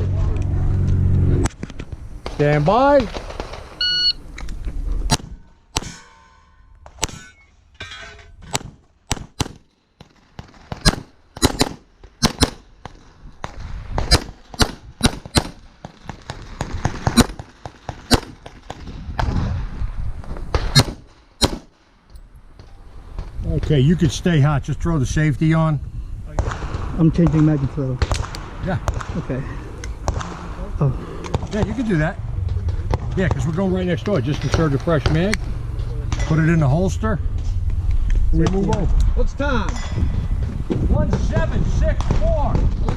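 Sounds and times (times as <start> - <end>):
shot timer beep: 3.8 - 4.2
pistol shots: 8.5 - 13.0, 14.0 - 18.8, 20.5 - 21.7.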